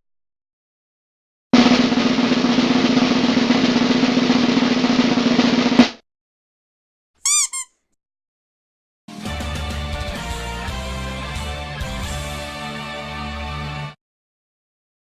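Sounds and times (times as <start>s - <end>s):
snare drum roll: 1.6s - 6.0s
high squeaky chirps: 7.2s - 7.8s.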